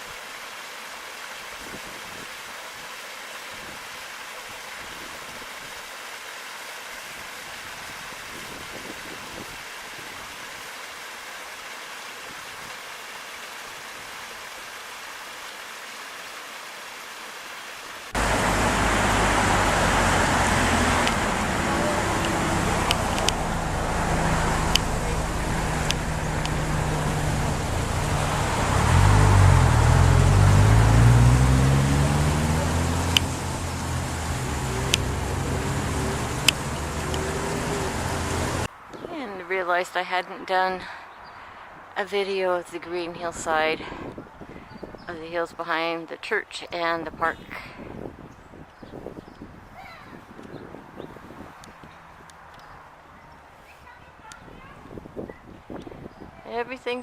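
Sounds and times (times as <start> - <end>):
small waterfall rushing: 0.0 - 38.7
motor vehicle engine running: 18.2 - 38.7.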